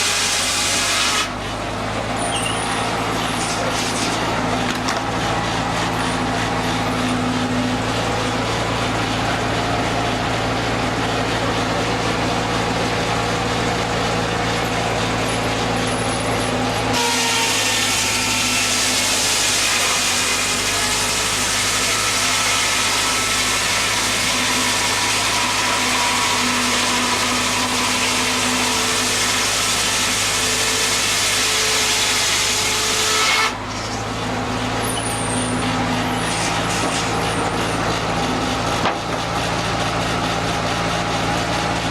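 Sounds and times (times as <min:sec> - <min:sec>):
saw blade cutting log: 0:00.0 - 0:41.9
sawmill engine running: 0:00.0 - 0:41.9.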